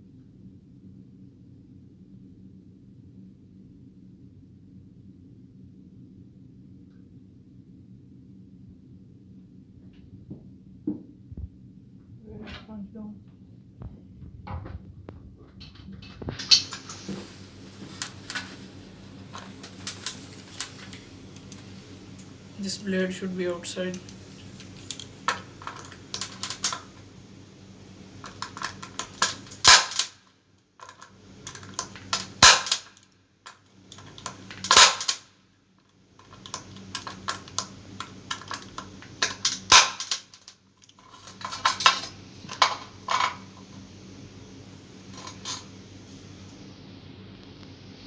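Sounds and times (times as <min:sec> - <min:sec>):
punch-down tool snapping: 0:29.0 - 0:30.2, 0:32.1 - 0:33.0, 0:34.6 - 0:35.2, 0:39.2 - 0:40.4.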